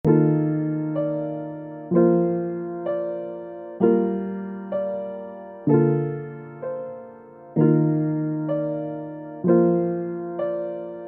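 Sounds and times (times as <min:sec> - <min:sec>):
electric piano chords: 0:00.0 - 0:11.0.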